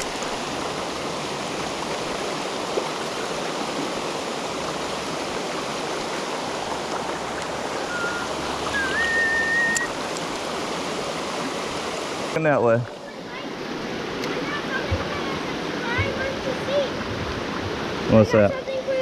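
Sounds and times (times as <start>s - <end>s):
creek water rushing: 0.0s - 19.0s
thin high whistle-like tone: 7.8s - 9.9s.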